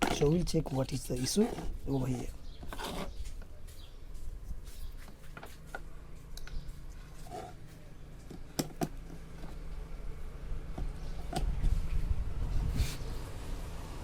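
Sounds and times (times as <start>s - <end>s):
steady low hum: 1.5s - 14.0s
handling clicks and taps: 8.2s - 9.6s.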